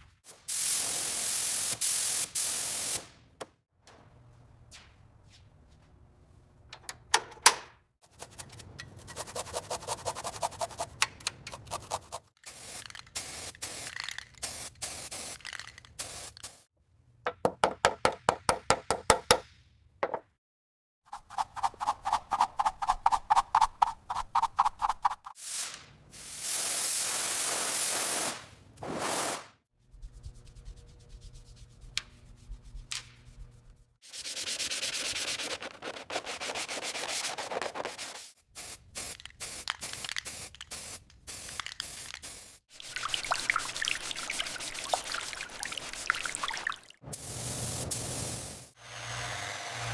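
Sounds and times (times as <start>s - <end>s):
rhythmic scrubbing and sanding: 8.1s - 10.9s, 29.9s - 38.4s
spray hisses: 16.0s - 16.7s, 25.4s - 28.4s, 47.2s - 48.8s.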